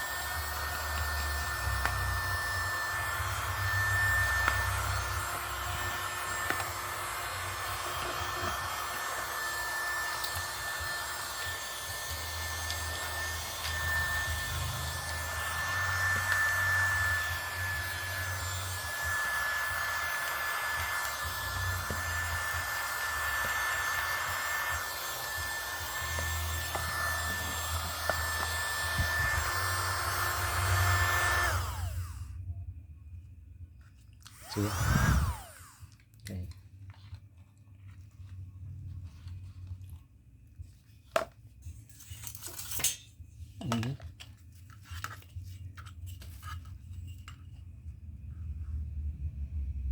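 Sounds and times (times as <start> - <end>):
small vacuum motor whining: 0.0 - 32.3, 34.3 - 36.0.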